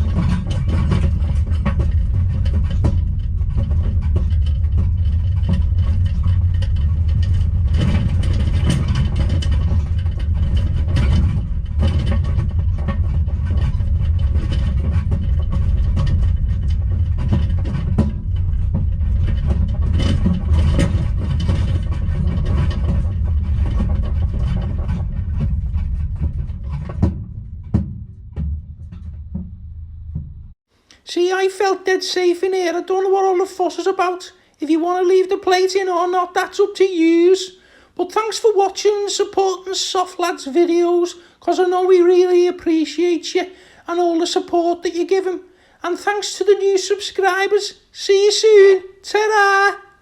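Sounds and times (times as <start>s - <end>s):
low road rumble: 0.0s - 30.7s
knocks and rattles: 0.0s - 50.0s.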